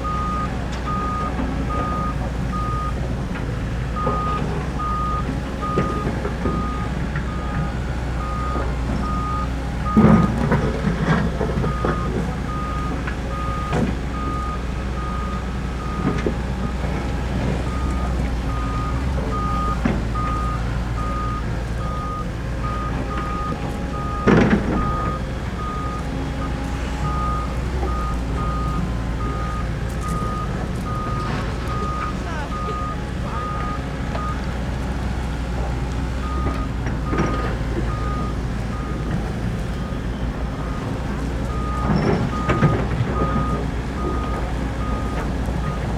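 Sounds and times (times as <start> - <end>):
excavator diesel engine rumble: 0.0 - 45.9
warning alarm beeps: 17.6 - 34.4.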